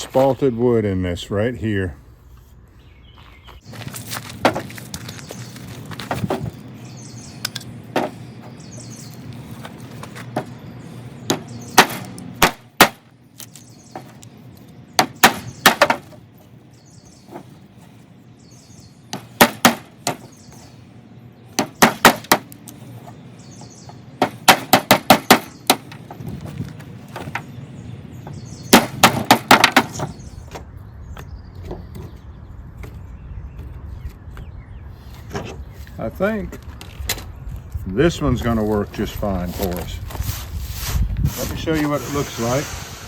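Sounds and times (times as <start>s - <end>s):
blows on wood: 40.2s - 43.0s.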